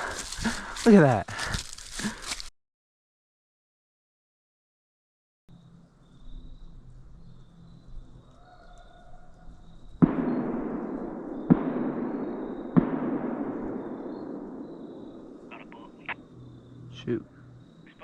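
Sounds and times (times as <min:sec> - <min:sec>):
gunshots: 0:10.0 - 0:16.2
long rolling echo: 0:10.0 - 0:17.6.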